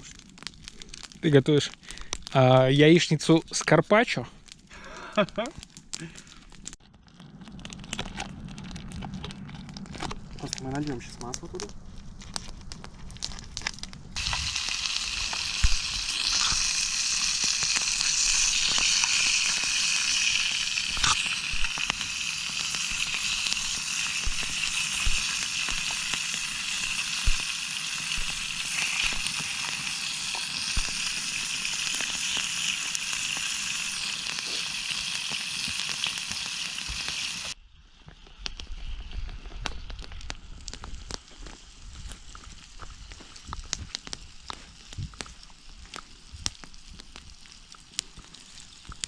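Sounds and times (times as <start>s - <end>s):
oil spitting pops: 14.2s - 19.6s
oil sizzling in a pan: 14.2s - 37.6s, 38.8s - 49.0s.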